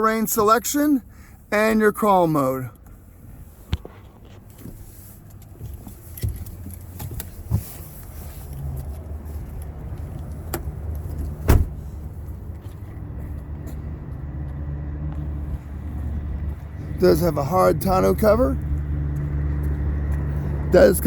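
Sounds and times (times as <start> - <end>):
vehicle engine idling: 0.0 - 21.0
heavy thump: 11.4 - 11.8.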